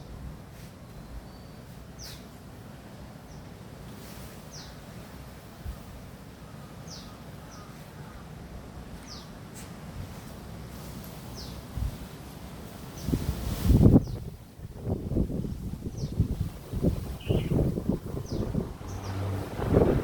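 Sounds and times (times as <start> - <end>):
low wind rumble: 11.3 - 20.0
bird chirping: 17.1 - 19.4.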